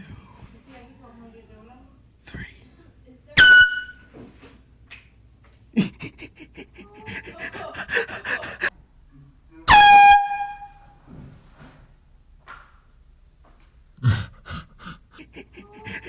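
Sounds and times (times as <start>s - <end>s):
air horn blare: 3.4s - 4.0s, 9.7s - 11.0s.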